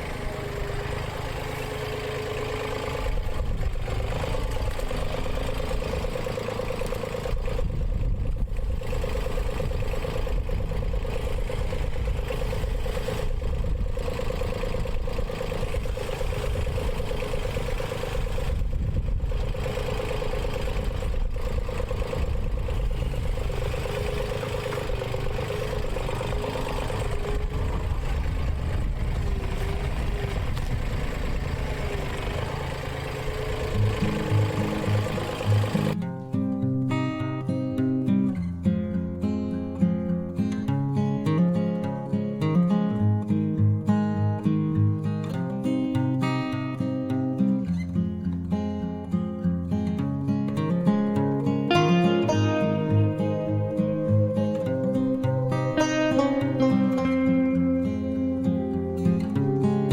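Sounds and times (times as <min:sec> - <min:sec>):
excavator diesel engine running: 0:00.0 - 0:36.0, 0:50.5 - 0:59.9
steady whine: 0:51.5 - 0:59.9.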